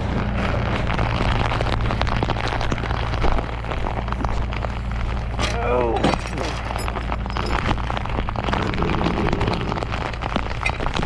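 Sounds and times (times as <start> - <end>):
low hum: 0.0 - 11.0
rain pattering: 0.0 - 11.0.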